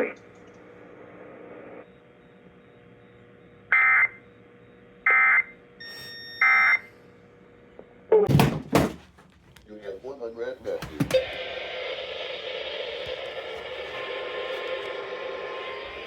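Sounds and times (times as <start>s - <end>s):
thin steady beep: 5.8s - 6.9s
loud burst of noise: 11.0s - 16.0s.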